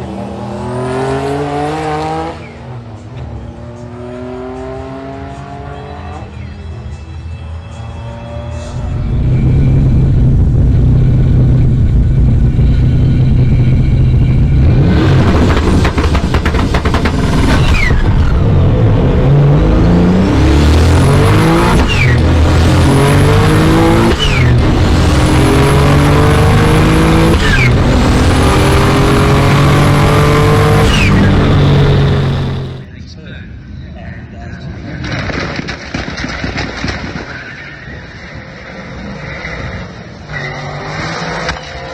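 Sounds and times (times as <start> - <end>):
car engine at full throttle: 0.0 - 2.5, 8.3 - 32.9.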